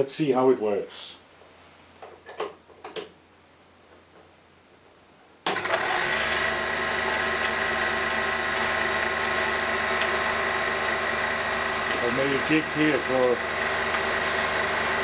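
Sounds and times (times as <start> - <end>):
table saw motor running: 5.5 - 15.0.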